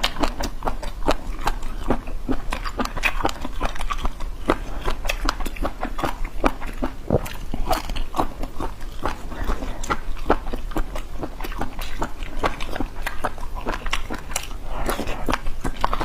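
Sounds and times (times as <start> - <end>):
wet chewing and lip smacking: 0.0 - 16.0.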